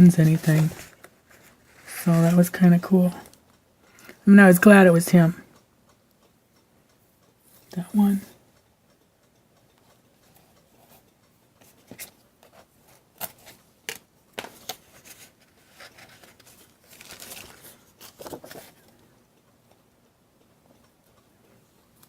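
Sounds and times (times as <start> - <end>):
paper and cellophane crinkling: 0.0 - 2.8, 14.4 - 18.9.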